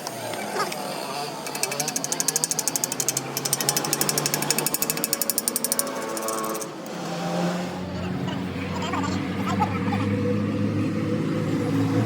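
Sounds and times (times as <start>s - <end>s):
power tool hammering rapidly: 1.4s - 6.7s.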